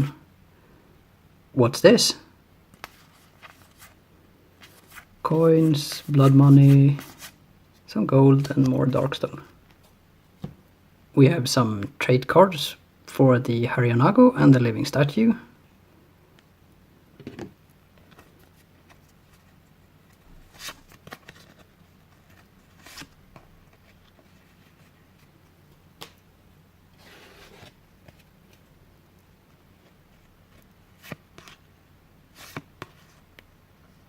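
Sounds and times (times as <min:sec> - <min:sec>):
soft card rustle: 0:02.7 - 0:04.0, 0:04.6 - 0:10.0, 0:17.9 - 0:26.3, 0:27.0 - 0:33.5.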